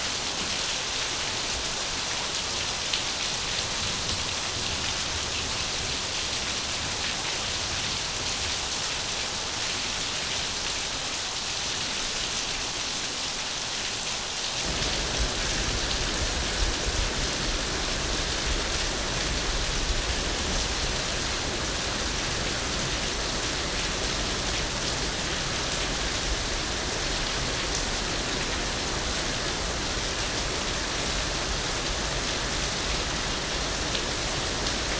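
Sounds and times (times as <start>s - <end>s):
hiss of falling water: 0.0s - 34.9s.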